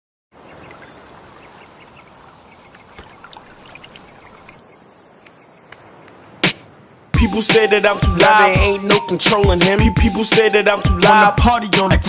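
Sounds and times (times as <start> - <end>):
high-pitched insect trill: 0.4 - 8.0.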